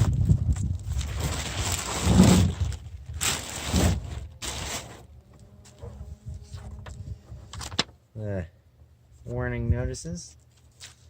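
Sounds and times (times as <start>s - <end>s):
plastic wrap crinkling: 0.0s - 5.1s.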